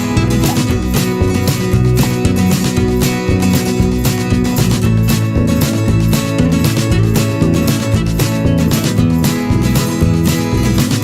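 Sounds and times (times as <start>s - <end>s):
country music with acoustic guitar: 0.0s - 11.0s.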